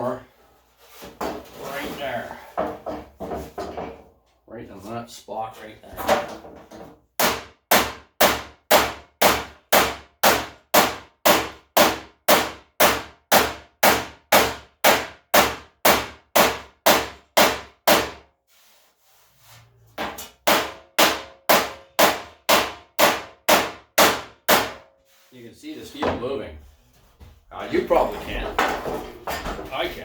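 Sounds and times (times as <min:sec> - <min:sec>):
hammer tapping sheet steel: 0:07.2 - 0:18.2, 0:20.0 - 0:24.9.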